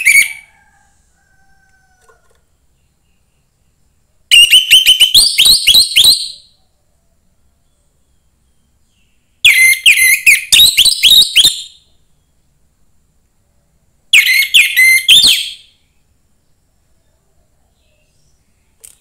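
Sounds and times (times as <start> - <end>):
thrush singing whistled notes: 0.0 - 0.6, 4.3 - 6.6, 8.1 - 12.4, 14.1 - 16.0.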